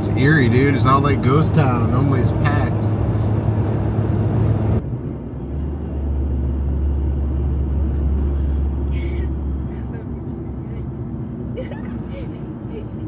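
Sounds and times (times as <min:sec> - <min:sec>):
road and engine drone in car: 0:00.0 - 0:13.0.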